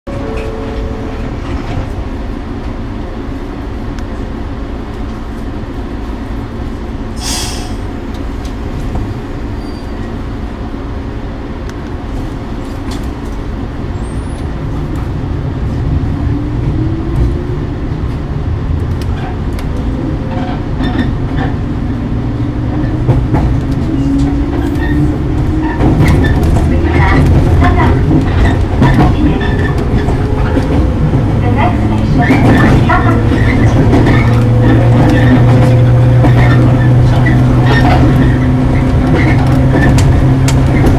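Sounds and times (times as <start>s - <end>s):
brief hiss: 7.2s - 7.8s.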